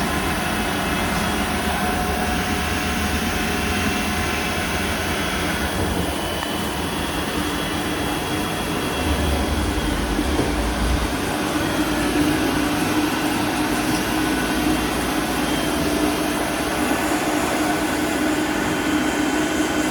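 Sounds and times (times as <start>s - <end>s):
lathe mechanical hum: 0.0s - 19.9s
low rumble: 5.6s - 11.8s.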